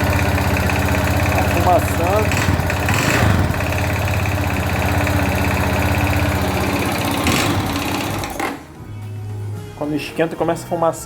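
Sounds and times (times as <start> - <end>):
motorcycle engine idling: 0.0 - 8.6.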